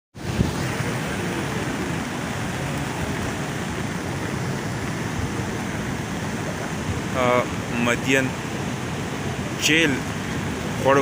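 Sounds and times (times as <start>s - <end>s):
river rushing: 0.2s - 11.0s.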